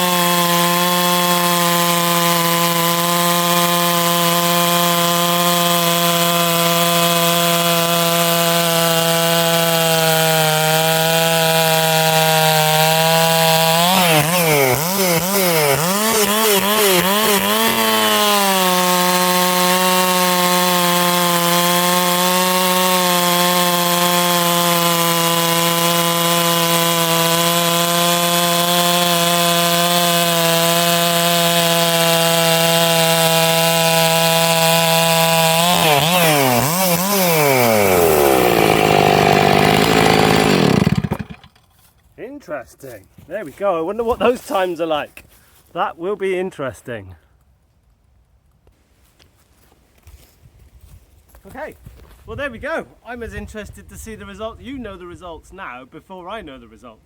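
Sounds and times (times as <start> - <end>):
chainsaw cutting log: 0.0 - 45.4.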